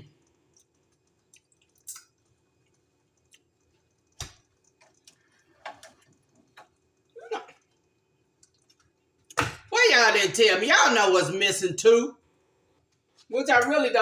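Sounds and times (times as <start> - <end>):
person chewing food: 0.0 - 9.4
soft mouth clicks: 1.3 - 2.1.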